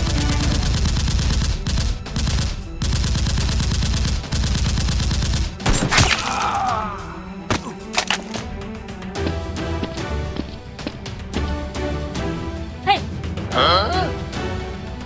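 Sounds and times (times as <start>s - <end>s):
automatic gunfire: 0.0s - 6.1s.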